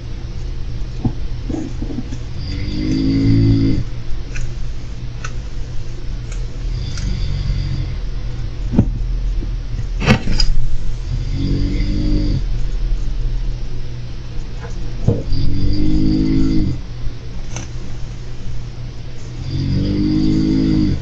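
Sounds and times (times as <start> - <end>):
steady low hum: 0.0 - 21.0
person snoring: 1.5 - 3.9, 6.6 - 8.1, 11.0 - 12.6, 15.2 - 16.8, 19.4 - 21.0.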